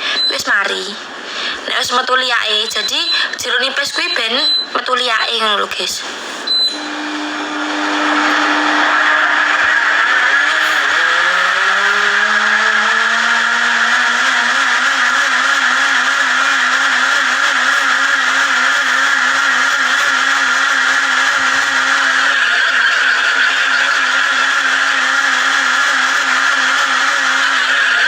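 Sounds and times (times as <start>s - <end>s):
small motor humming: 6.5s - 28.0s.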